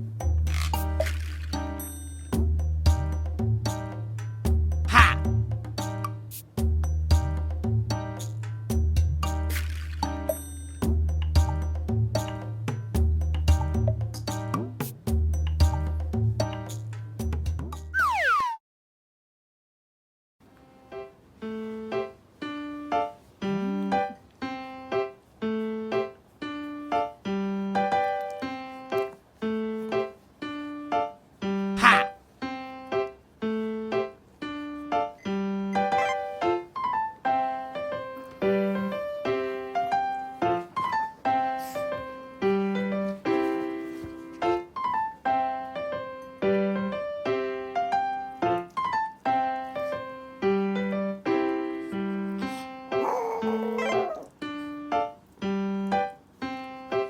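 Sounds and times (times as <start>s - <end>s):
bouncy piano-like keyboard tune: 17.7s - 18.6s, 20.6s - 53.0s, 53.7s - 57.0s.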